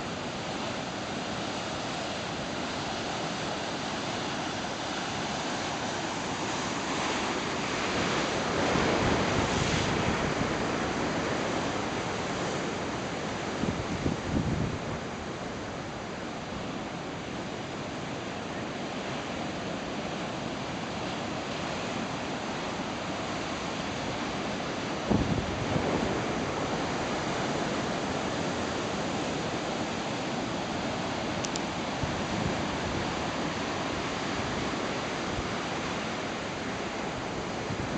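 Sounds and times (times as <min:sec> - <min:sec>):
ocean surf breaking: 0:00.0 - 0:37.9.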